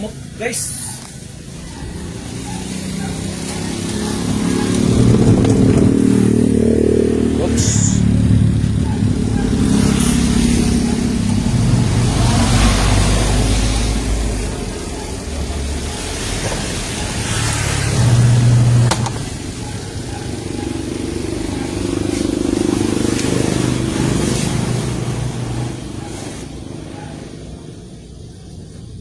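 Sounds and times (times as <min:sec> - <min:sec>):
washing machine motor hum: 0:01.2 - 0:29.0.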